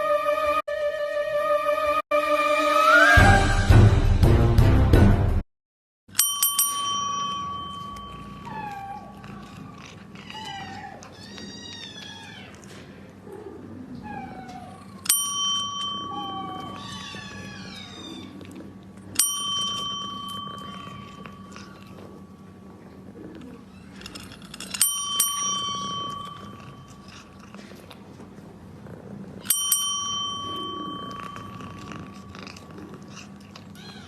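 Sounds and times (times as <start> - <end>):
small metal bell ringing: 6.1 - 9.4, 15.0 - 17.2, 19.1 - 22.2, 24.0 - 27.2, 29.5 - 33.0.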